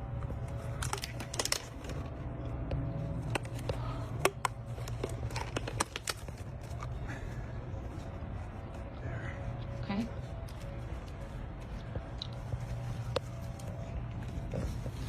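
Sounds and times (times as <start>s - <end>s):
low hum: 0.0s - 15.0s.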